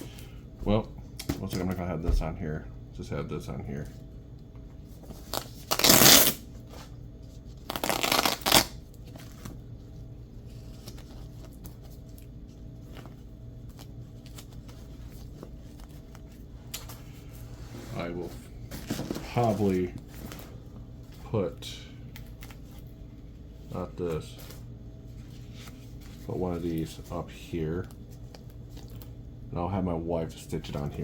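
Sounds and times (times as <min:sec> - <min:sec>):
velcro ripping: 0:05.3 - 0:06.5, 0:07.6 - 0:08.8.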